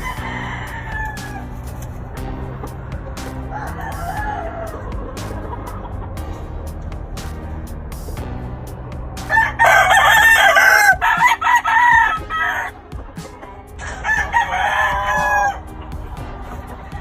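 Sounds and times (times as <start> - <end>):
rooster crowing: 0.0 - 1.6, 3.5 - 5.0, 9.3 - 12.7, 13.8 - 15.7.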